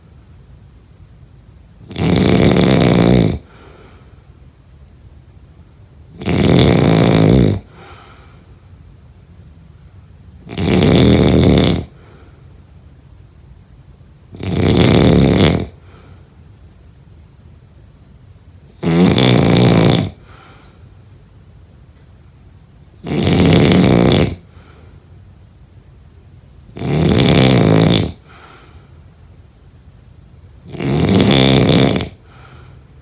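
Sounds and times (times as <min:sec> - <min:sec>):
person snoring: 0:01.9 - 0:03.6, 0:06.2 - 0:07.9, 0:10.5 - 0:11.9, 0:14.4 - 0:15.8, 0:18.8 - 0:20.4, 0:23.0 - 0:24.4, 0:26.8 - 0:28.5, 0:30.7 - 0:32.4
soft breath: 0:03.5 - 0:04.3, 0:07.7 - 0:08.6, 0:20.2 - 0:21.0, 0:24.4 - 0:25.1, 0:28.2 - 0:29.1, 0:32.2 - 0:33.0.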